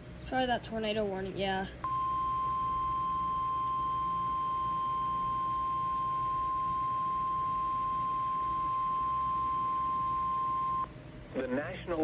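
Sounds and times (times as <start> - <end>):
steady warning alarm tone: 1.8 - 10.9.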